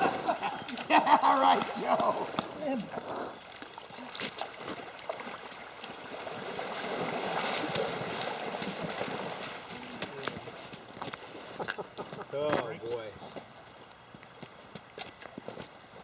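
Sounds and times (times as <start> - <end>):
creek water rushing and splashing: 0.0 - 14.3.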